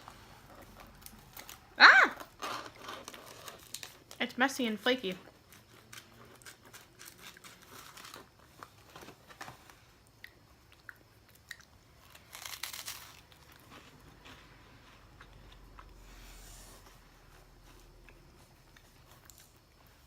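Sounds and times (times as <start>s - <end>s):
chewing crisp cookie: 0.0s - 4.3s, 5.1s - 20.0s.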